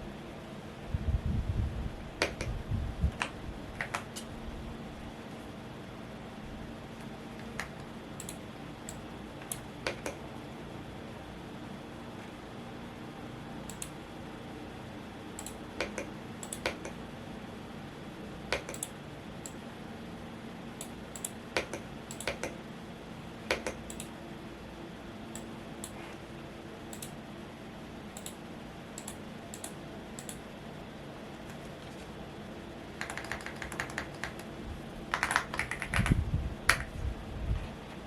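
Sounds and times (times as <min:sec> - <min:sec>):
fan humming: 0:00.0 - 0:38.0
mechanical keyboard keystrokes: 0:21.2 - 0:22.6, 0:33.0 - 0:34.5, 0:35.1 - 0:36.9.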